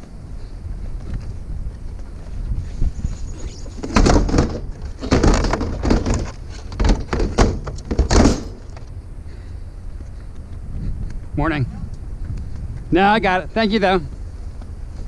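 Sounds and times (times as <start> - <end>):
clattering knocks and rattles: 3.7 - 8.9.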